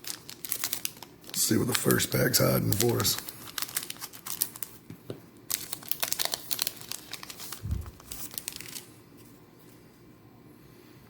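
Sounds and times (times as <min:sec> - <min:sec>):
foil wrapper crinkling and tearing: 0:00.0 - 0:04.8, 0:05.5 - 0:09.0.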